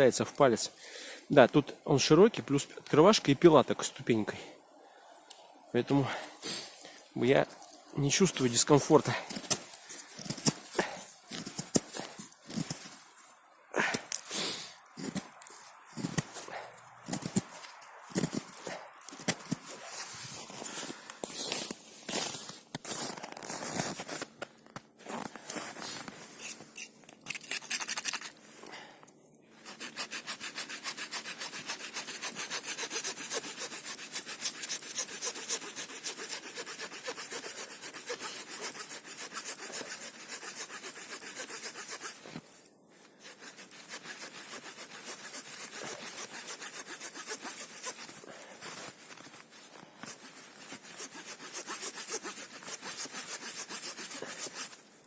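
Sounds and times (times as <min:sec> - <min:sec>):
saw cutting a branch: 0:07.6 - 0:13.0, 0:15.0 - 0:19.9, 0:29.6 - 0:42.4, 0:43.2 - 0:49.0, 0:50.1 - 0:54.8.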